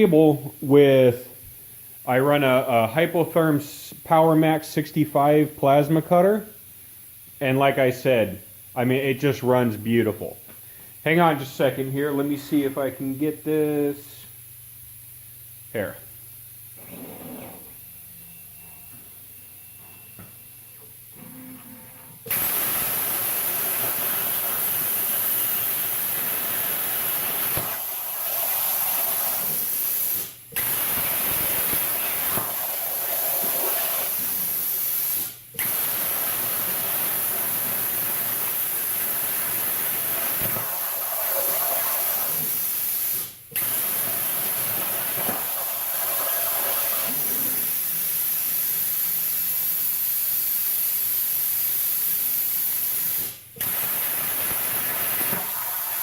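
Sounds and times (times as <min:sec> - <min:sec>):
air compressor running: 0:16.7 - 0:56.0.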